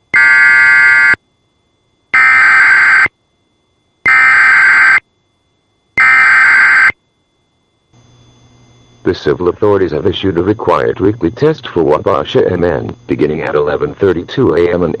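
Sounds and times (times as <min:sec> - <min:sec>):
harsh buzzing digital data bursts: 0:00.0 - 0:01.2, 0:02.1 - 0:03.1, 0:04.0 - 0:05.1, 0:06.0 - 0:07.0.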